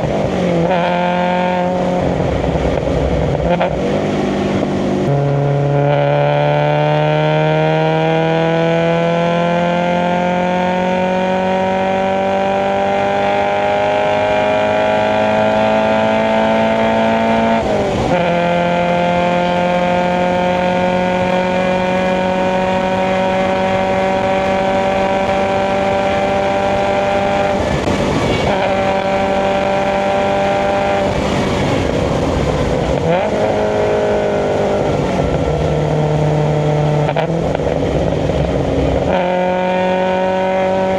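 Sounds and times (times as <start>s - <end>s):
car engine revving: 0.0s - 40.9s.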